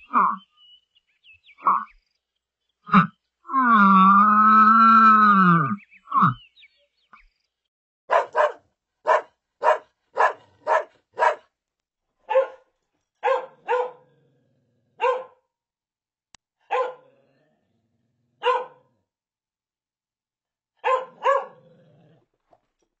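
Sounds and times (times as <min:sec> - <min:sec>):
dog barking: 0:08.1 - 0:11.5, 0:12.2 - 0:14.2, 0:15.0 - 0:15.4, 0:16.6 - 0:17.2, 0:18.4 - 0:19.0, 0:20.8 - 0:21.7.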